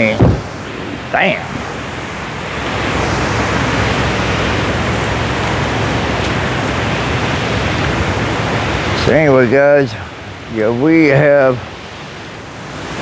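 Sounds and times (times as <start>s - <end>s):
steady rushing wind: 0.0s - 13.0s.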